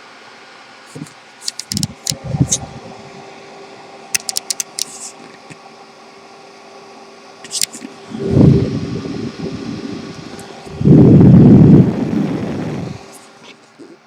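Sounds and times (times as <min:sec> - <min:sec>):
fan hum: 0:00.0 - 0:14.0
objects knocking and clicking: 0:04.2 - 0:05.0.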